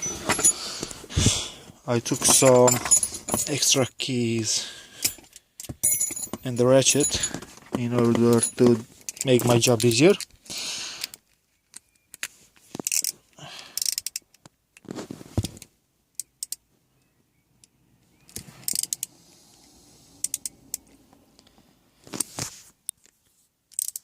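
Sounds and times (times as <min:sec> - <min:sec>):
metal sockets and ratchet clinking: 0:00.0 - 0:00.6, 0:02.0 - 0:03.9, 0:05.0 - 0:10.3, 0:11.7 - 0:13.1, 0:18.3 - 0:19.1, 0:20.2 - 0:20.9, 0:23.7 - 0:24.0.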